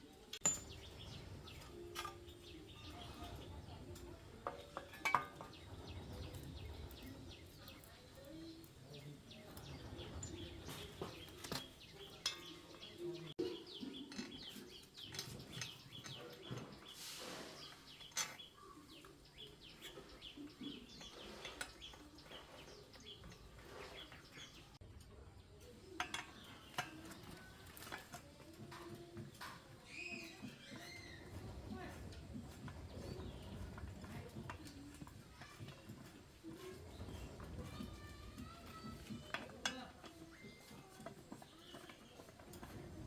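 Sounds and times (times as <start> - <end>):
metallic clinks of tools: 0.3 - 8.6.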